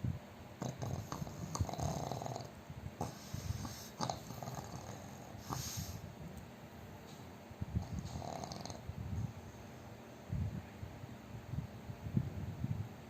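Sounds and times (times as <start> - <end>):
dog snoring loudly: 0.6 - 6.0, 7.8 - 8.9
dog snorting: 0.6 - 6.1, 7.8 - 8.8.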